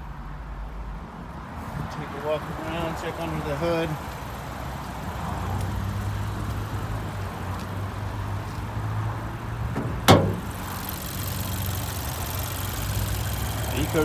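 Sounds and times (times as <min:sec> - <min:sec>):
car engine idling: 0:09.4 - 0:14.0
sharp clunk: 0:09.7 - 0:10.9.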